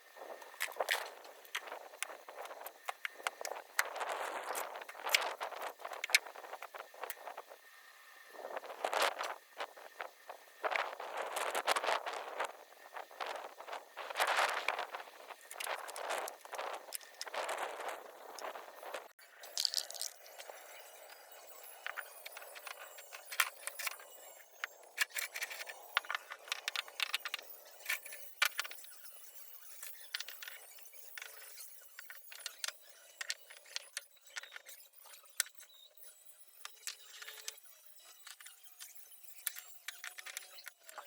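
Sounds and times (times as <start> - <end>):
hard objects clinking together: 19.4 - 20.6.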